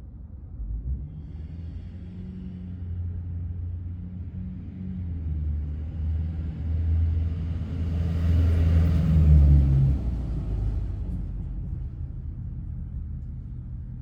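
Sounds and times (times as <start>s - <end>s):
vehicle engine rumble passing: 5.6s - 14.0s.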